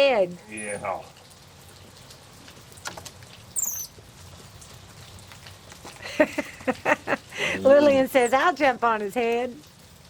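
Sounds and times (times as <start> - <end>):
steady rain: 0.0 - 10.0
monkey squeak: 3.6 - 4.0.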